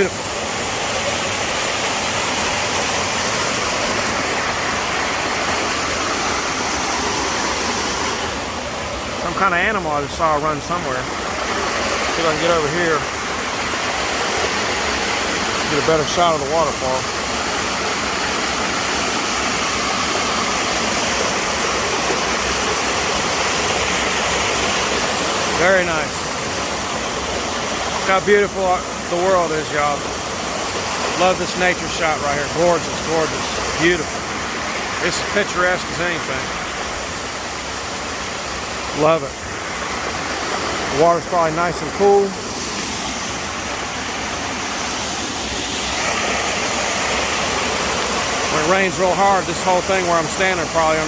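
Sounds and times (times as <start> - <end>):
waterfall and stream rushing: 0.0 - 51.0.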